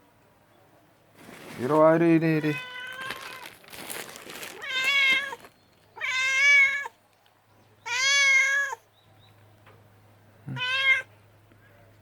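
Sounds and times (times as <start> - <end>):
cat meowing: 2.4 - 3.6, 4.5 - 5.4, 6.0 - 6.9, 7.8 - 8.8, 10.5 - 11.1.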